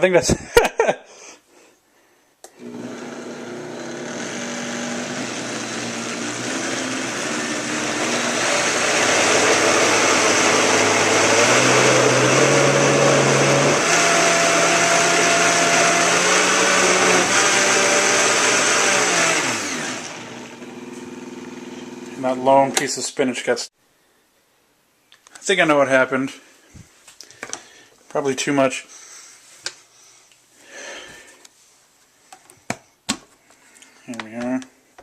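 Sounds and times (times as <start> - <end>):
blender motor running: 2.6 - 22.2.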